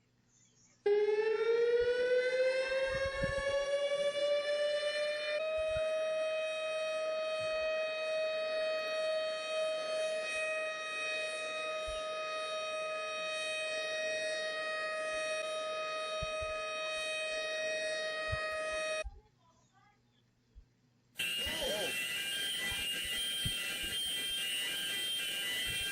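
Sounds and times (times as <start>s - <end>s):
ship's alarm siren: 0.9s - 19.0s, 21.2s - 25.9s.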